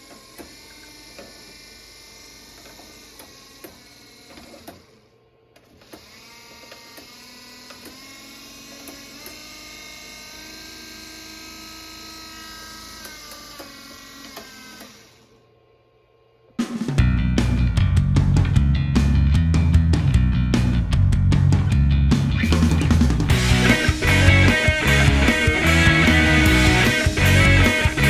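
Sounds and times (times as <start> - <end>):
electric motor whine: 5.8 - 15.5, 23.3 - 28.0.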